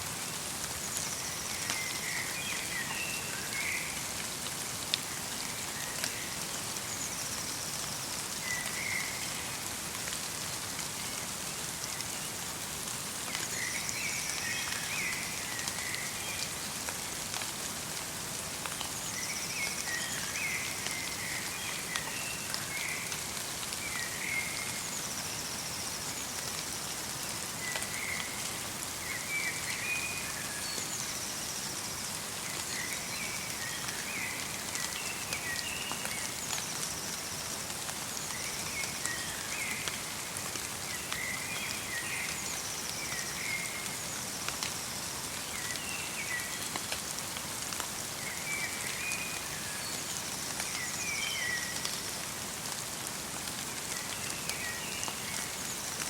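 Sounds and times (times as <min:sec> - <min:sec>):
light rain in forest: 0:00.0 - 0:56.0.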